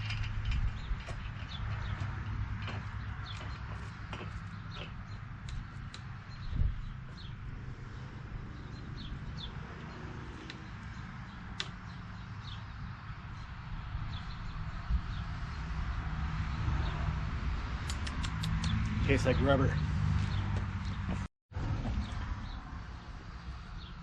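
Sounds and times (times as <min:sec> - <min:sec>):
small birds chirping: 0:00.5 - 0:16.7.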